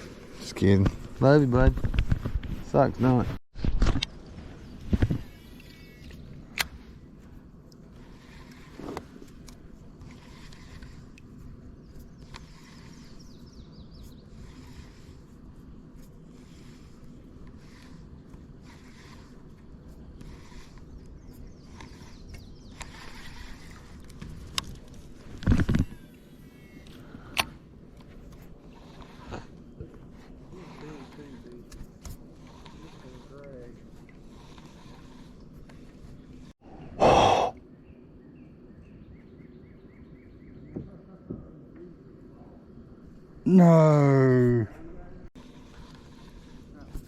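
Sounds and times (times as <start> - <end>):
person sighing loudly: 37.0 - 37.6, 43.5 - 44.7.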